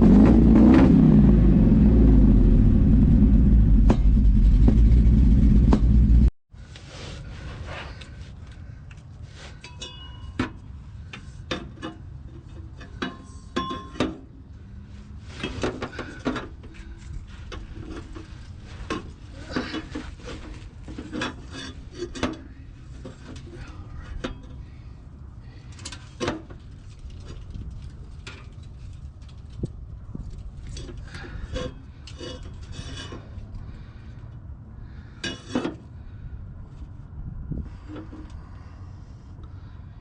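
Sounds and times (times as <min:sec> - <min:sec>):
metallic tool clinks and scrapes: 0:09.5 - 0:10.6.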